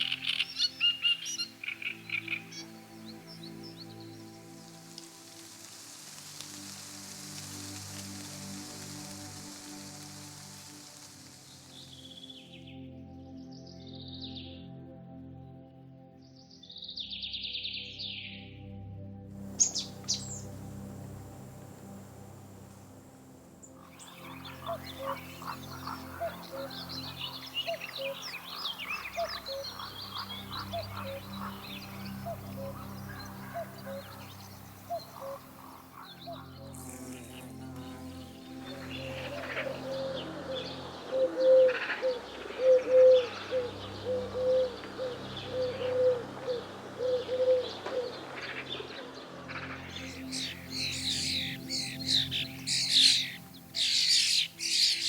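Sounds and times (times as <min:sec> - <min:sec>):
small birds chirping: 0:00.0 - 0:12.8, 0:19.4 - 0:49.0, 0:49.6 - 0:55.0
frogs croaking in chorus: 0:19.6 - 0:55.0
dove cooing: 0:24.2 - 0:36.4, 0:38.8 - 0:48.1.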